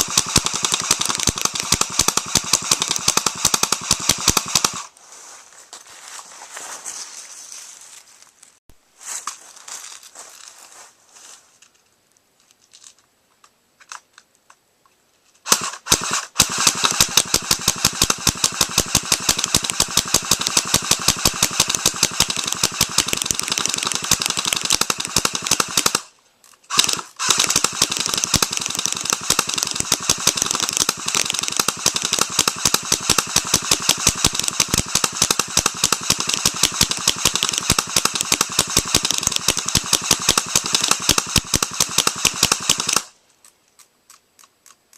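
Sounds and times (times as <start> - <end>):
airsoft guns firing full-auto: 0.0 - 4.9, 15.5 - 26.1, 26.7 - 43.2.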